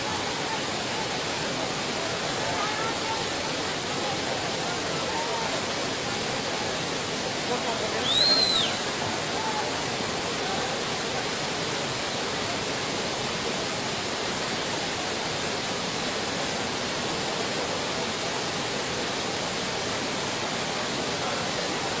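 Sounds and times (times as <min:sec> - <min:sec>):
rushing floodwater roar: 0:00.0 - 0:22.0.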